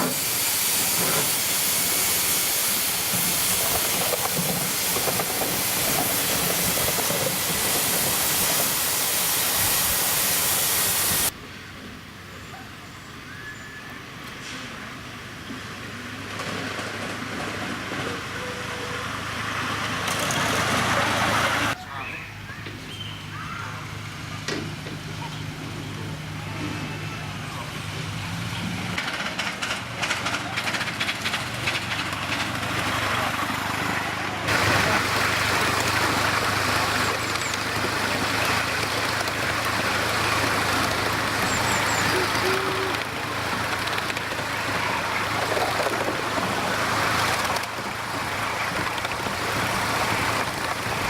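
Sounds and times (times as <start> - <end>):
steam locomotive hissing: 0.0 - 11.4, 23.2 - 51.0.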